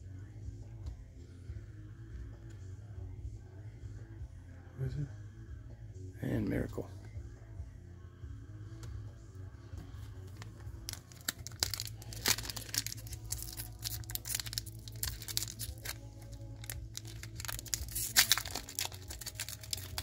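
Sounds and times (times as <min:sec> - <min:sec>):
wrapper tearing and crinkling: 0:10.4 - 0:20.0.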